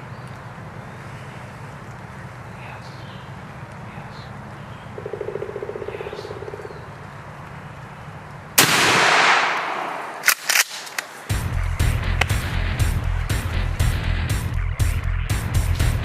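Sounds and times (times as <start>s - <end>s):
sharp clicks: 7.4s - 11.4s, 12.1s - 12.5s
shotgun blast: 8.6s - 11.4s.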